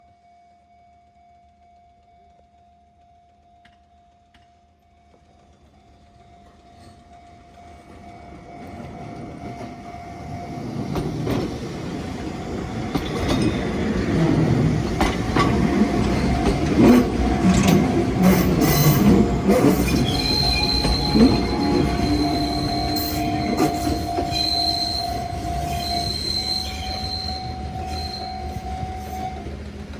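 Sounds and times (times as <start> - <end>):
electric train passing: 5.3 - 29.9
crossing alarm tone: 5.9 - 29.7
high wheel squeal: 12.9 - 29.6.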